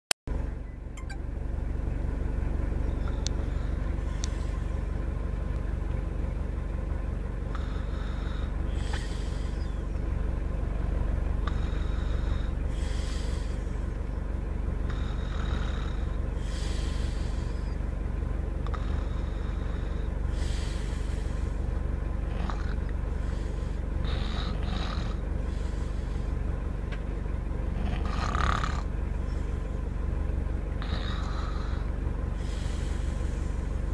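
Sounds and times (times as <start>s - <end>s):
steady low hum: 0.3s - 33.9s
person snoring: 11.4s - 13.9s, 14.9s - 17.8s, 18.7s - 21.6s, 22.2s - 26.3s, 27.8s - 28.9s, 30.8s - 33.9s.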